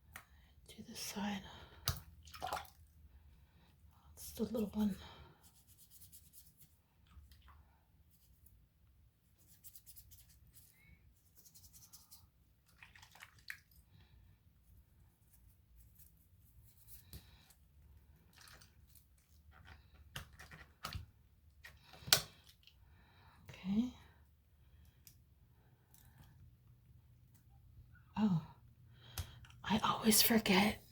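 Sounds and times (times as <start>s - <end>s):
faint scratching and rubbing: 4.6s - 6.8s, 9.2s - 12.3s, 15.0s - 17.2s.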